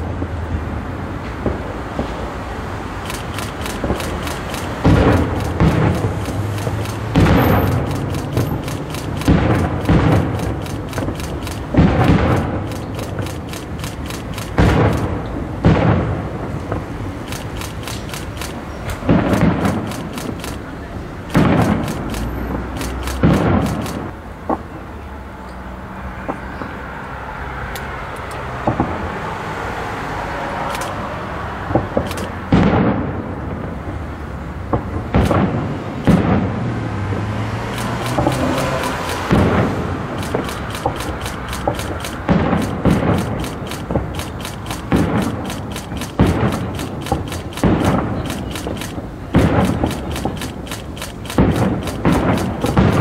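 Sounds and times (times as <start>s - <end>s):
fireworks crackling: 1.3s - 24.8s, 34.7s - 36.6s, 37.6s - 53.0s
fireworks booming: 2.9s - 24.8s, 28.6s - 29.1s, 31.7s - 33.8s, 34.7s - 53.0s.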